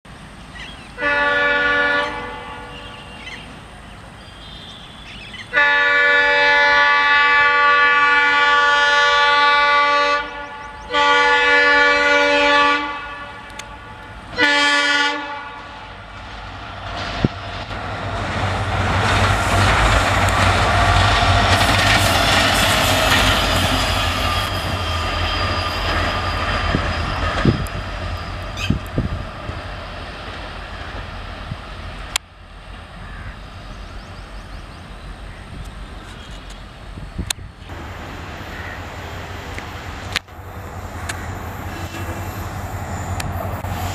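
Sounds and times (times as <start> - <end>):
locomotive engine rumbling: 0.2 - 43.9
locomotive air horn: 1.0 - 3.2, 5.5 - 16.0
train wheels clicking over rail joints: 16.0 - 32.8, 39.3 - 43.9.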